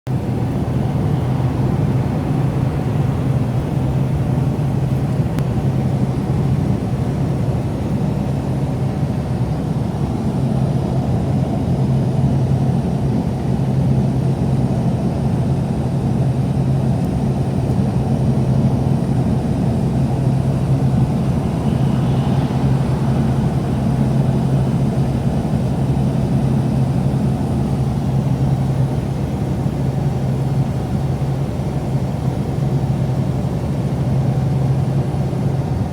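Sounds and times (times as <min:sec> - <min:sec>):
car engine and road drone: 0:00.1 - 0:35.9.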